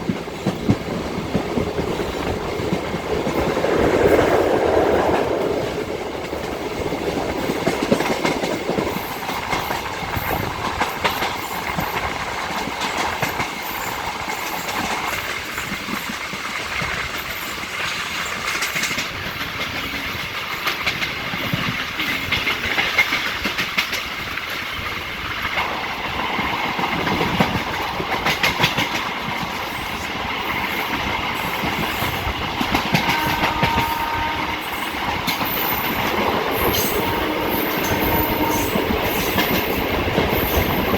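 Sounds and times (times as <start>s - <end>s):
train wheels clattering over rail joints: 5.2s - 40.9s.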